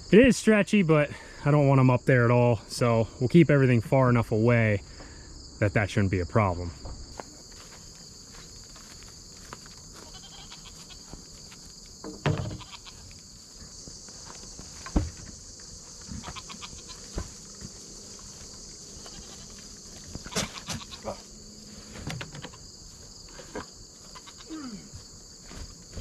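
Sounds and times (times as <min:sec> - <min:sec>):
crickets chirping: 0:00.0 - 0:26.0
goat bleating: 0:10.0 - 0:11.1, 0:12.6 - 0:13.0, 0:16.2 - 0:17.1, 0:19.0 - 0:19.6, 0:20.2 - 0:21.3, 0:24.1 - 0:24.6.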